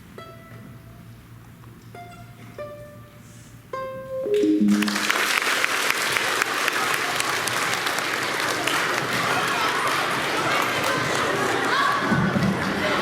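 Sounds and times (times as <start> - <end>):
instrumental piece: 2.0 - 5.6
audience applause: 4.4 - 13.0.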